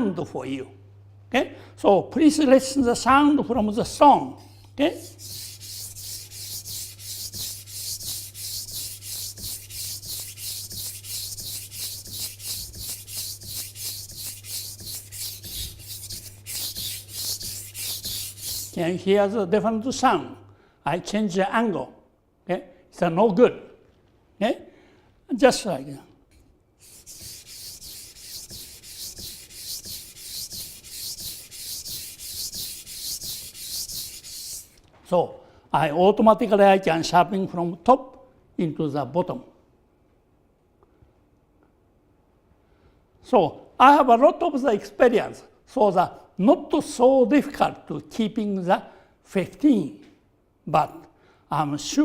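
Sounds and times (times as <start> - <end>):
knife scraping on whetstone: 5.0 - 18.8, 26.8 - 34.8.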